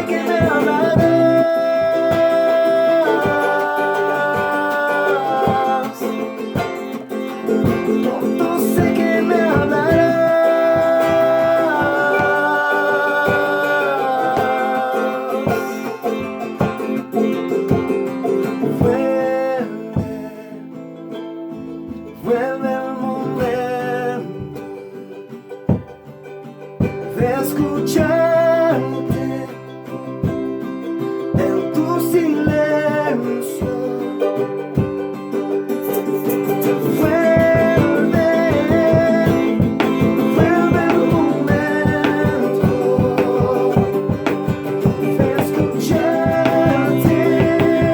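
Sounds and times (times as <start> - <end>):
voices singing long notes: 0.0 - 6.3, 7.6 - 16.3, 36.8 - 47.9
acoustic guitar strumming: 0.0 - 47.9.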